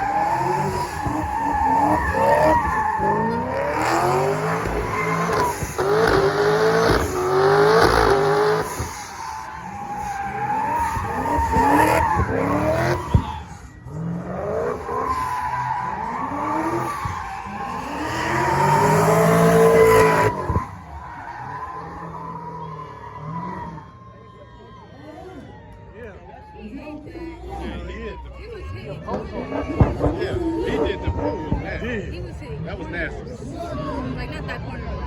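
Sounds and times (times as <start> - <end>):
car engine revving: 0.0 - 23.8
tires squealing: 0.0 - 32.4.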